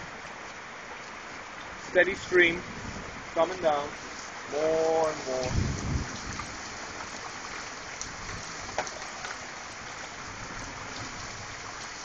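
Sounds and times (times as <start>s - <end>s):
heavy rain falling: 0.0s - 12.0s
water pouring: 3.4s - 12.0s.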